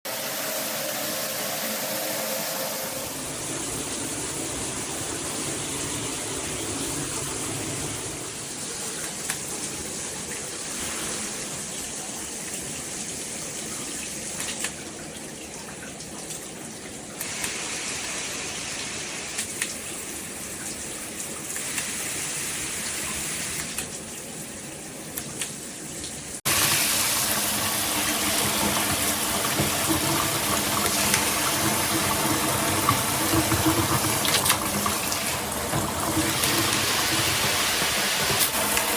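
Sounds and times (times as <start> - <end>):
shower head spraying water: 26.5 - 38.9.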